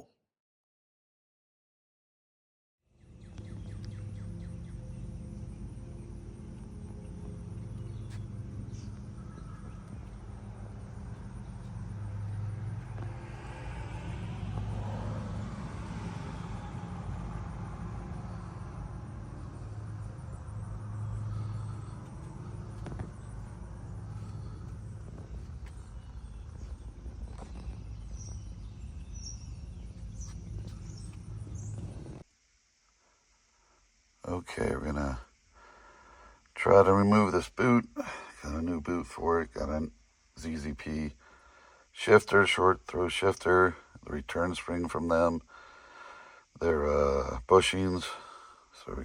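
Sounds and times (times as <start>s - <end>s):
vehicle engine humming: 3.0s - 32.2s
faint chirps: 3.0s - 32.3s.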